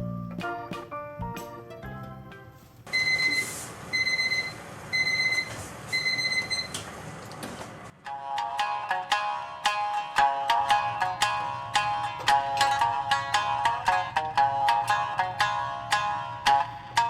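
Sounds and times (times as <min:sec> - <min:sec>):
background music: 0:00.0 - 0:02.8, 0:08.0 - 0:17.0
high electronic beeps: 0:02.9 - 0:06.7.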